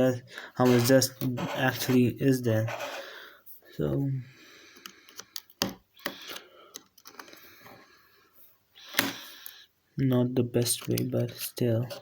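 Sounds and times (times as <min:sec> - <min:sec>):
light scraping on phone: 0:00.6 - 0:03.0.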